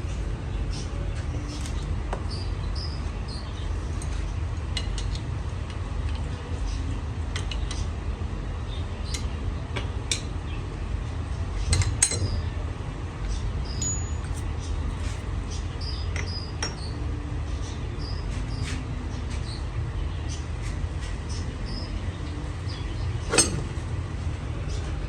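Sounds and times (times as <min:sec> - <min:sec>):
low machinery hum: 0:00.0 - 0:25.0
metal tools clinking: 0:13.8 - 0:14.5, 0:23.3 - 0:23.8.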